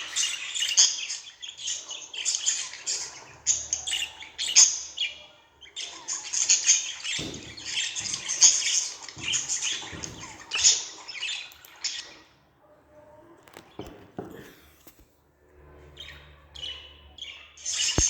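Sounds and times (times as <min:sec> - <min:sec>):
budgerigars chattering: 0:00.0 - 0:12.4, 0:16.0 - 0:18.0.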